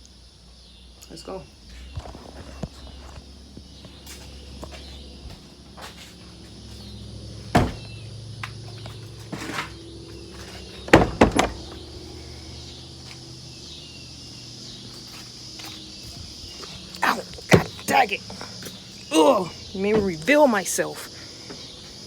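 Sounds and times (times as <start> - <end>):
door bangs: 7.5 - 8.0, 10.9 - 11.9
door clatter: 7.5 - 8.0, 10.4 - 11.9.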